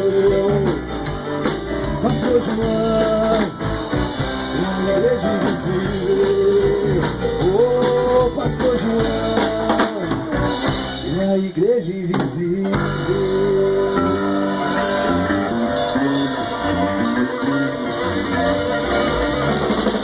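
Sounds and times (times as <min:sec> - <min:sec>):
rock music: 0:00.0 - 0:20.0
gliding melody line: 0:12.9 - 0:20.0.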